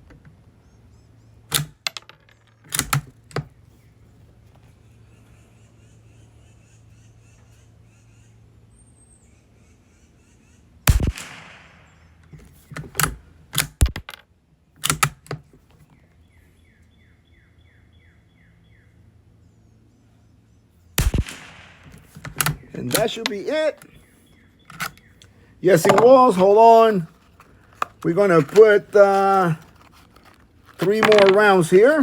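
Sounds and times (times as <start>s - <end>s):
rifle shot crack: 10.9s - 12.0s, 21.0s - 22.2s
rifle bolt metallic clicks: 12.9s - 14.2s, 14.8s - 15.4s, 21.0s - 23.9s, 24.7s - 26.4s.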